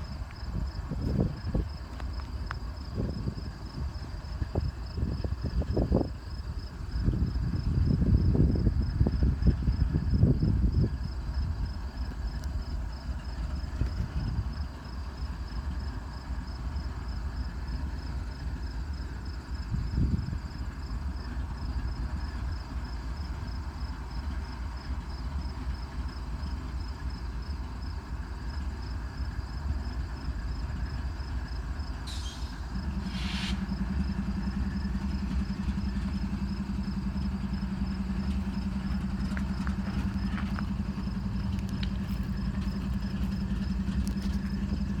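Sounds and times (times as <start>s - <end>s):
train idling rumble: 0.0s - 45.0s
short hisses: 32.1s - 33.7s.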